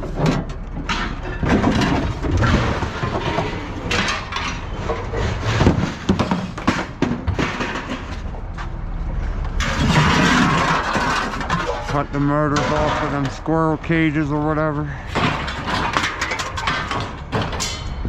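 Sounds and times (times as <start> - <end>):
engine running: 0.0 - 18.0
refrigerator scraping on metal: 1.3 - 8.2, 9.6 - 14.6.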